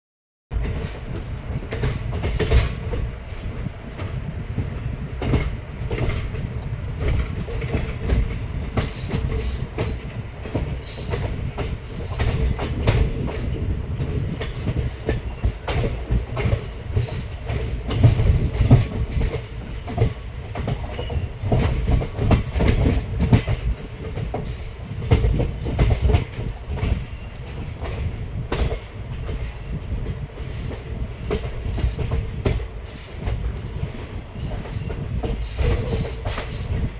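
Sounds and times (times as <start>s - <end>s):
train low rumble: 0.5s - 36.9s
wheels clattering over rail joints: 0.6s - 36.9s.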